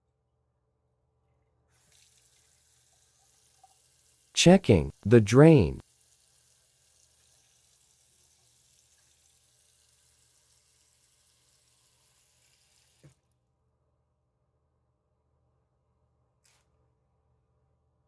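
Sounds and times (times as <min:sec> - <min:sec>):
faint water running down drain: 0:01.7 - 0:04.4, 0:05.8 - 0:13.2.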